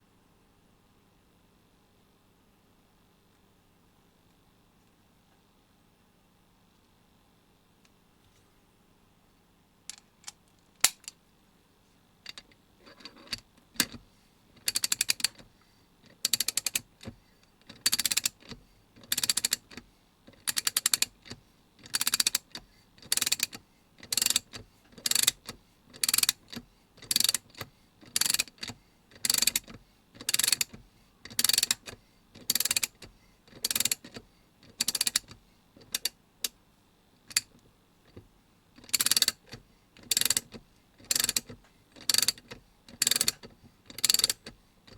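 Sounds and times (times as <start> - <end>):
ratchet clicking: 14.6 - 15.4, 16.2 - 16.8, 17.8 - 18.4, 19.1 - 19.6, 20.4 - 21.1, 21.8 - 25.4, 26.0 - 26.4, 27.0 - 27.5, 28.1 - 28.6, 29.2 - 30.7, 31.3 - 34.1, 34.7 - 35.3, 38.8 - 39.4, 40.0 - 40.5, 41.1 - 44.4.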